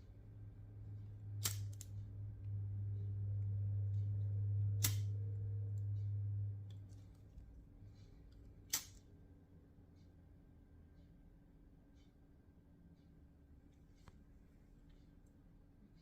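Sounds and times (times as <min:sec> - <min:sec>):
low steady hum: 0:00.0 - 0:16.0
sharp clicks of small tools: 0:01.4 - 0:02.0, 0:04.8 - 0:05.2, 0:08.3 - 0:09.1.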